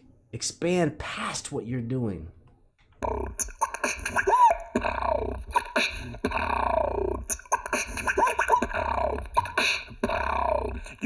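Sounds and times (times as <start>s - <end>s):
beatboxing: 3.0s - 11.0s.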